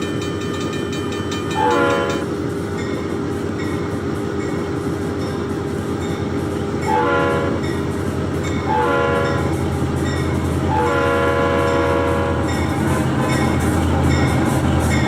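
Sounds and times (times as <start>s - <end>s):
train rumbling past: 0.0s - 15.0s
locomotive air horn blasts: 1.6s - 2.2s, 6.9s - 7.6s, 8.7s - 9.5s, 10.7s - 13.2s.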